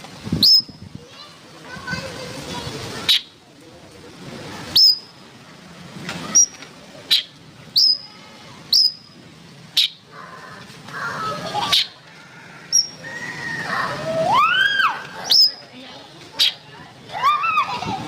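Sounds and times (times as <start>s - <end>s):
bird singing upswept whistles: 0.4s - 0.8s, 4.8s - 5.1s, 7.1s - 8.1s, 8.7s - 9.1s, 15.3s - 15.6s.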